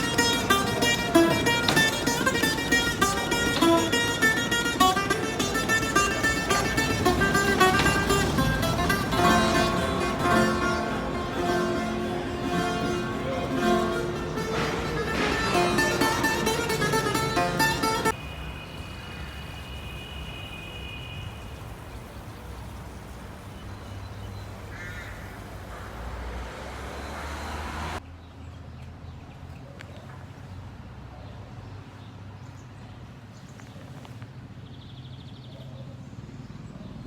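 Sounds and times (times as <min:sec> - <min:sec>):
low outdoor rumble: 0:00.0 - 0:19.2.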